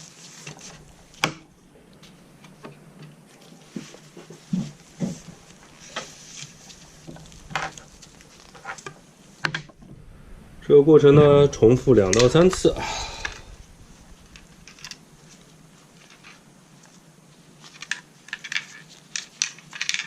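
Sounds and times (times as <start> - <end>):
cord scraping through rifle barrel: 3.9 - 9.0, 12.0 - 15.3.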